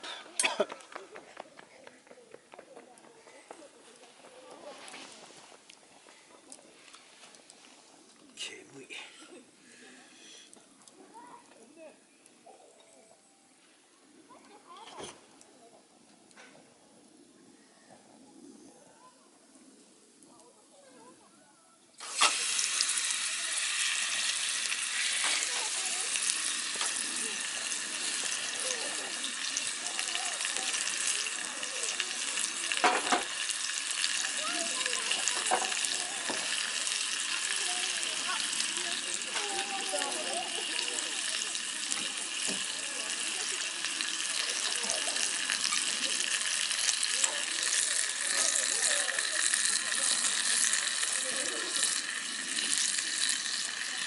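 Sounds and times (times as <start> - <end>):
food sizzling in a frying pan: 22.0 - 54.0.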